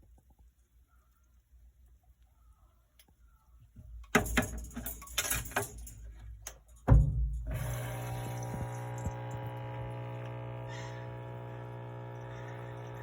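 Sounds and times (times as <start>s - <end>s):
washing machine rattling knocks: 4.1s - 5.9s, 6.8s - 7.7s
loud thump: 6.9s - 7.7s
low motor hum: 7.0s - 13.0s.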